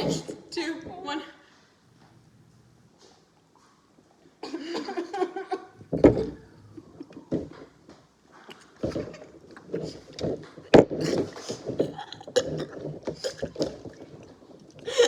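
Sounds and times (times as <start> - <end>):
person gulping soda: 5.9 - 7.5, 8.4 - 15.0
sputtering and stifled laughing: 11.0 - 13.7.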